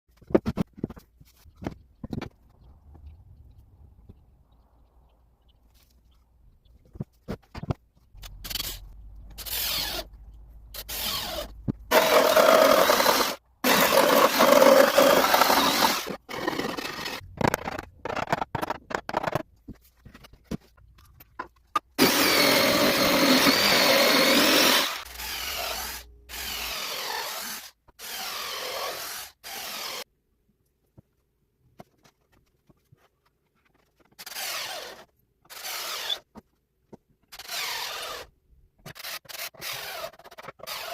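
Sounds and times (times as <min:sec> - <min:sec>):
power tools working wood: 0:10.8 - 0:17.2, 0:22.0 - 0:30.0.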